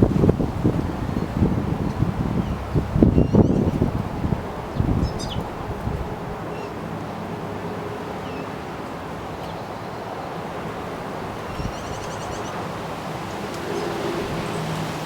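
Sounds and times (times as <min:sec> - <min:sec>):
wind gusting on microphone: 0:00.0 - 0:07.9, 0:10.0 - 0:15.0
wind rushing through trees: 0:00.0 - 0:15.0
small birds chirping: 0:01.2 - 0:03.9, 0:04.7 - 0:05.6, 0:11.5 - 0:12.6.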